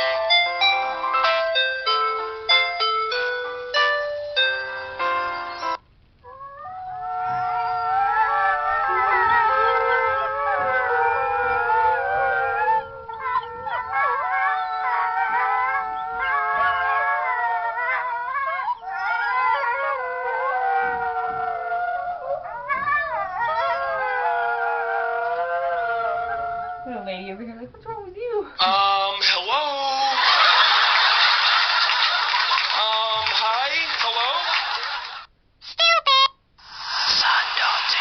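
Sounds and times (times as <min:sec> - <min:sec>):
dogs howling in chorus: 0:06.3 - 0:27.3.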